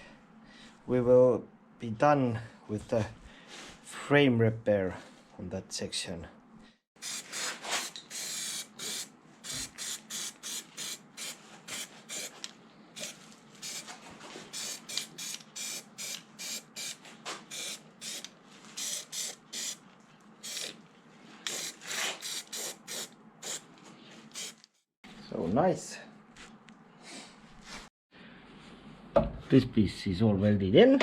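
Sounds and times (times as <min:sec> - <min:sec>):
aerosol can spraying: 0:07.0 - 0:13.9, 0:14.5 - 0:19.8, 0:20.4 - 0:20.8, 0:21.5 - 0:23.7, 0:24.3 - 0:24.7.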